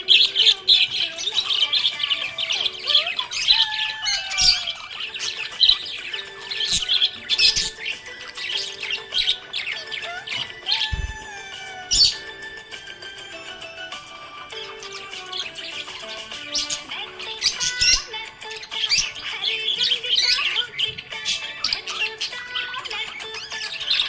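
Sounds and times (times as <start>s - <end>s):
budgies chirping and warbling: 0.0s - 24.0s
budgie whistled notes: 2.8s - 13.5s.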